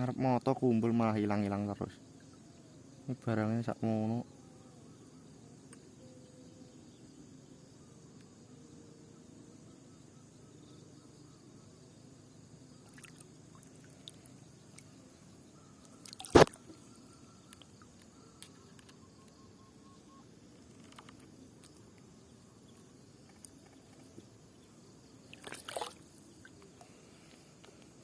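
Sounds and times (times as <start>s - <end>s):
loud sharp knock or splash: 16.2s - 16.6s.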